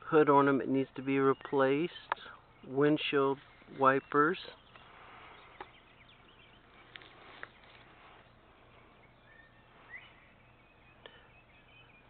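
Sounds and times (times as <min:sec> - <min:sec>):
faint chirp: 0:01.1 - 0:12.0.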